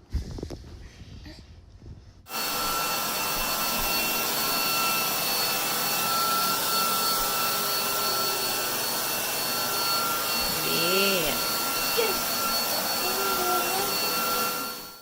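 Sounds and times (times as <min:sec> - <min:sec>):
motor appliance whirring: 0:02.3 - 0:15.0.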